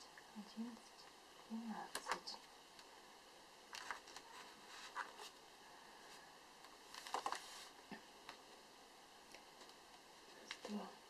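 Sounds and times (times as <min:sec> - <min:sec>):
soft rustles of crochet work: 0:03.8 - 0:08.0.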